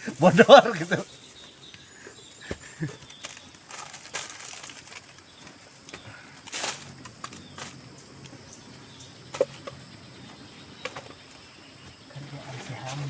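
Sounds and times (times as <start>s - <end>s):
short rustle: 6.4s - 7.8s.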